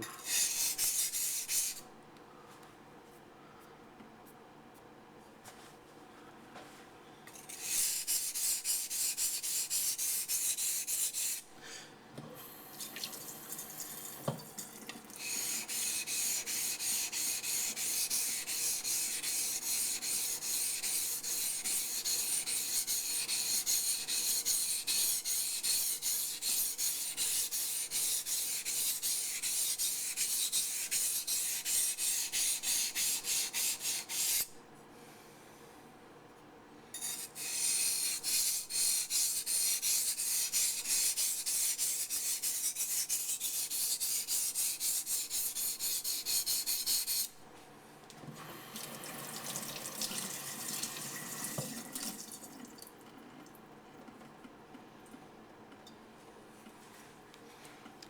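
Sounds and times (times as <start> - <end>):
knife scraping on whetstone: 37.0 - 47.3.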